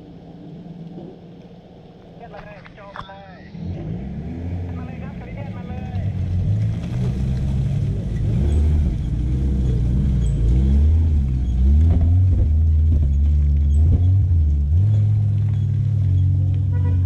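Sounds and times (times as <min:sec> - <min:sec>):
car engine revving: 0:03.5 - 0:17.0.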